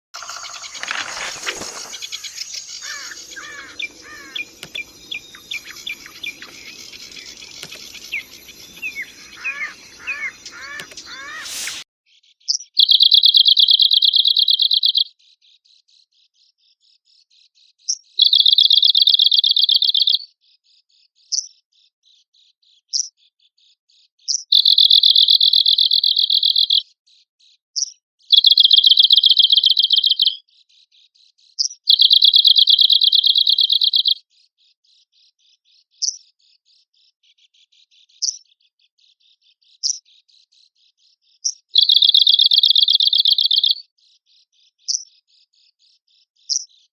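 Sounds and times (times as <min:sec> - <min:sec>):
bird dry rapid trills: 0:00.2 - 0:11.8
bird high call notes: 0:00.2 - 0:11.8.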